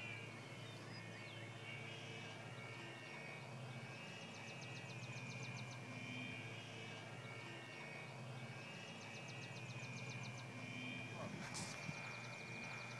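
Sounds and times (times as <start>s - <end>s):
model plane motor whine: 4.6s - 12.9s.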